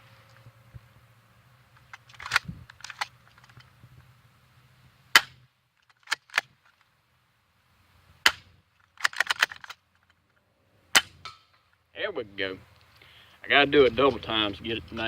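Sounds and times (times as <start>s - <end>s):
bb pistol cocking and firing: 1.8s - 3.1s, 5.1s - 5.4s, 8.2s - 9.8s.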